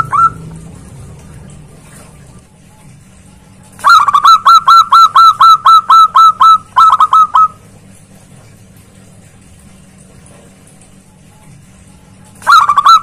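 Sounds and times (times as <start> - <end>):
dove cooing: 0.0 - 0.5, 3.8 - 7.6, 12.4 - 13.0.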